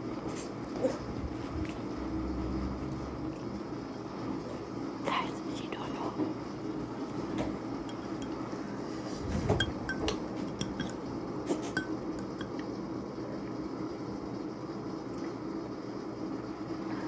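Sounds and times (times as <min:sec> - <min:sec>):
utensils clinking against a dish: 0:07.9 - 0:08.6, 0:09.4 - 0:12.6.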